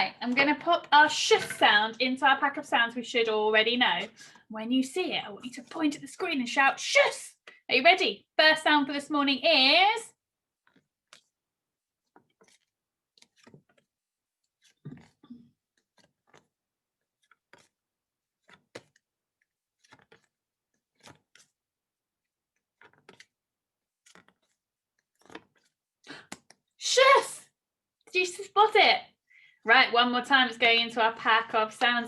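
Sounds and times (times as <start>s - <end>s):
paper flashcards flipping: 10.6s - 26.7s.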